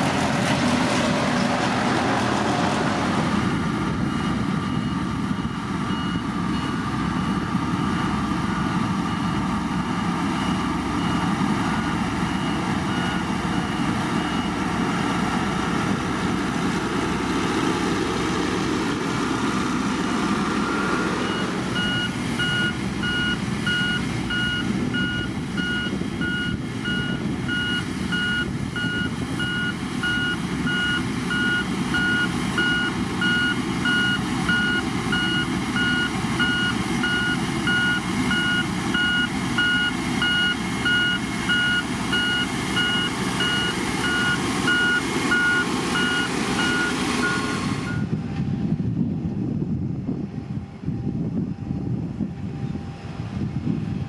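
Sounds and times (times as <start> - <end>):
diesel grader running: 0.0 - 54.0
reversing alarm beeping: 3.9 - 8.2, 9.0 - 15.2, 21.2 - 48.2.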